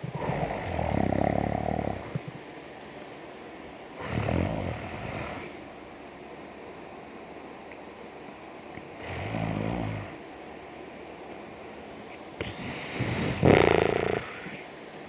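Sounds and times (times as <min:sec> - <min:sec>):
dog growling: 0:00.0 - 0:02.2, 0:04.0 - 0:05.5, 0:12.4 - 0:14.6.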